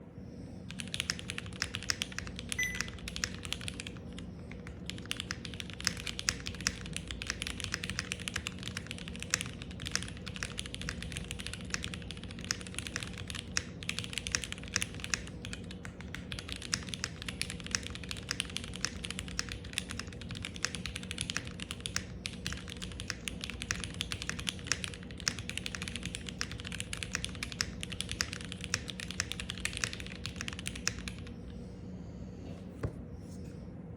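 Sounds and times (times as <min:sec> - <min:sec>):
fast typing on mechanical keyboard: 0:00.7 - 0:31.4.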